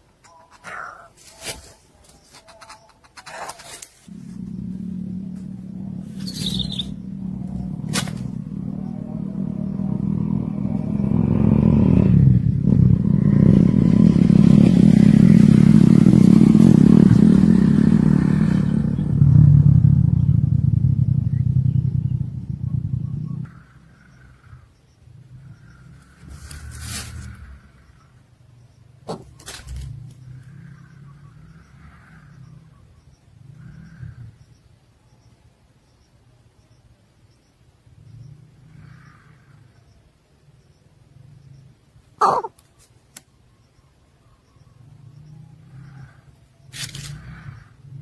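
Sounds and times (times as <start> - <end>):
engine running: 4.0 - 28.2.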